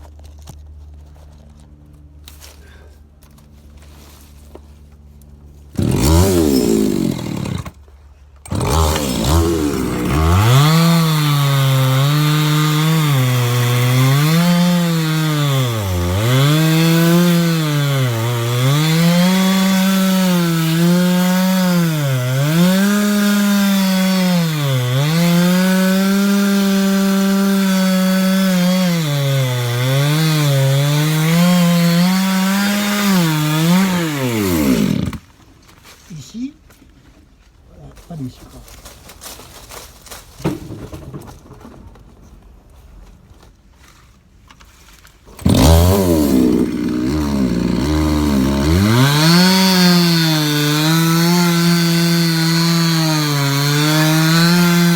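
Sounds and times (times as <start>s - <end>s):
chainsaw revving and cutting wood: 5.7s - 35.3s, 45.3s - 54.9s.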